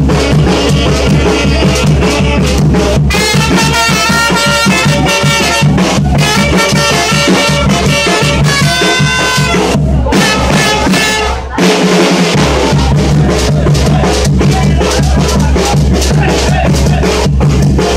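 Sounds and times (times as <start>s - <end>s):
upbeat latin dance music: 0.0s - 11.6s.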